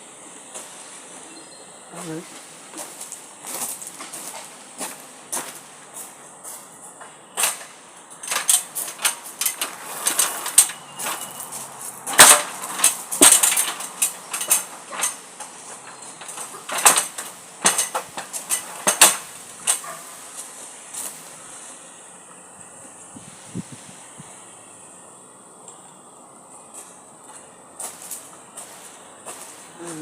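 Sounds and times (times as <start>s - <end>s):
clicks and clatter of hard parts: 7.0s - 20.0s.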